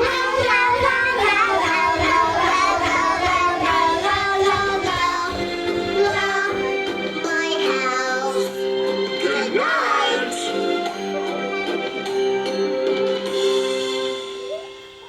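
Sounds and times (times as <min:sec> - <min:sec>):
children singing: 0:00.0 - 0:10.8
instrumental accompaniment: 0:00.0 - 0:15.0.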